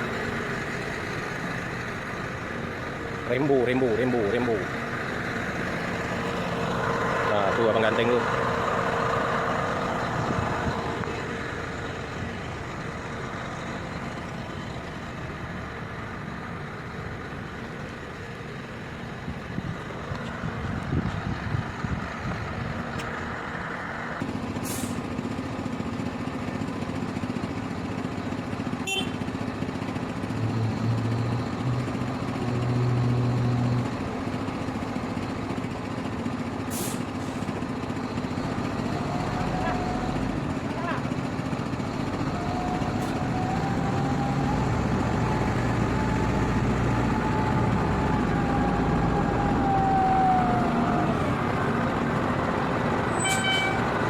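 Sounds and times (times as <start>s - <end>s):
diesel engine running: 0.0s - 54.0s
short sharp hisses: 24.6s - 25.0s.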